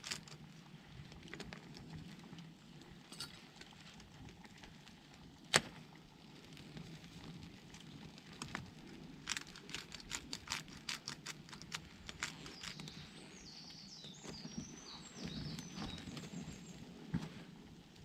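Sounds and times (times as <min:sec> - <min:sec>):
campfire crackling and popping: 0:00.0 - 0:12.9.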